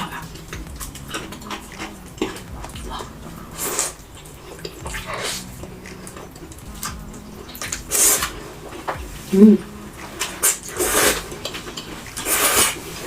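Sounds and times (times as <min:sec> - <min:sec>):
person chewing noodles: 0:00.0 - 0:13.0
slurping: 0:00.0 - 0:13.0
wet mouth clicks and smacks: 0:00.2 - 0:09.2.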